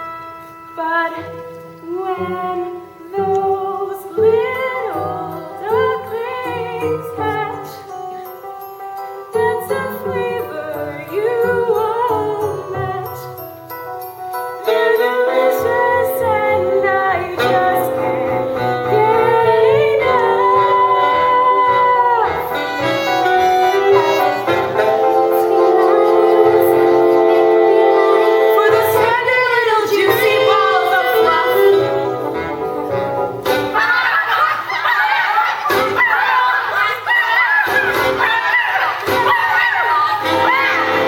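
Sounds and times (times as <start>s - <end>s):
instrumental accompaniment: 0.0s - 34.2s
children singing: 14.6s - 41.0s.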